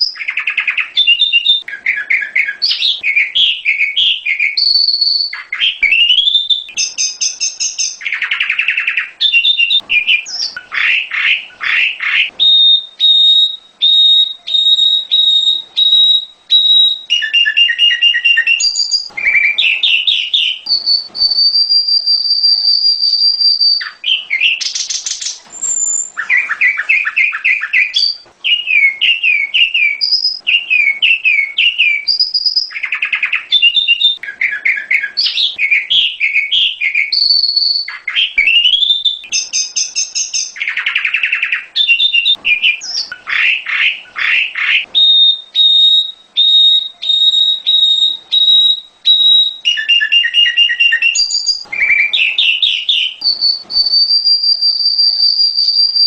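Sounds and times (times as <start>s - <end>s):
bird singing varied song: 0.0s - 56.0s.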